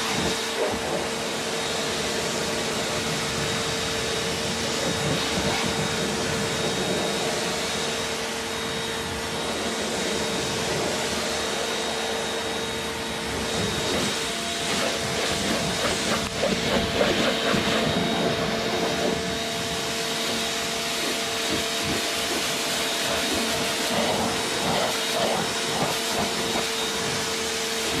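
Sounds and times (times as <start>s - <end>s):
pressure washer motor humming: 0.0s - 28.0s
water spray hissing: 13.8s - 27.2s.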